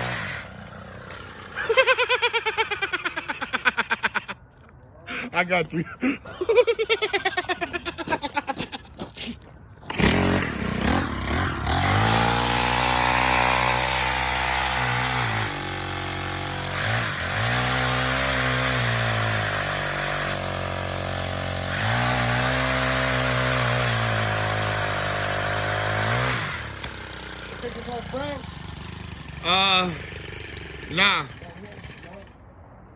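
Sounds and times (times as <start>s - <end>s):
chainsaw revving: 0.0s - 3.7s, 9.8s - 32.4s.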